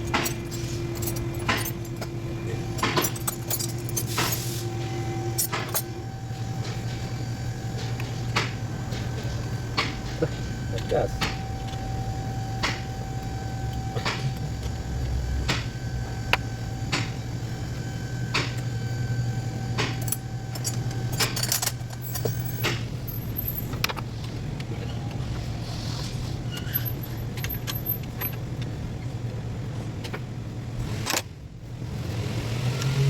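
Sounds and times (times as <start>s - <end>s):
car engine humming: 0.0s - 18.6s.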